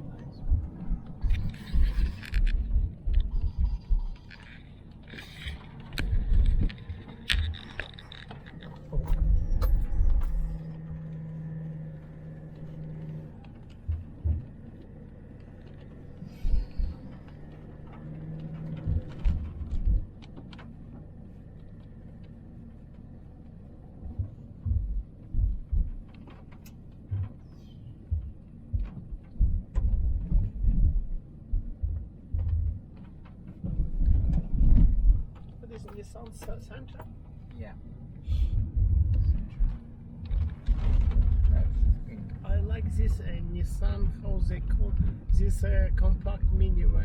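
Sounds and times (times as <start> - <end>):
car engine and road hum: 0.0 - 47.0
car thumping over bumps: 8.8 - 21.8.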